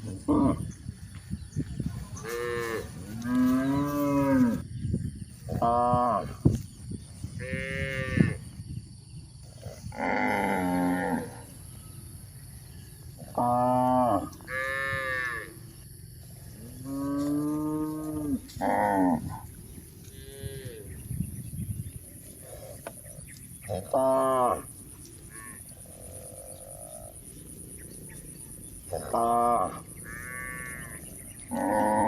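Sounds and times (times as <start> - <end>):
cattle mooing: 28.9 - 32.0.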